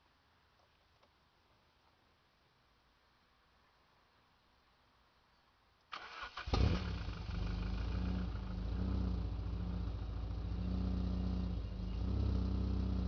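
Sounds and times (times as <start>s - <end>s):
car engine starting and idling: 5.9s - 13.0s.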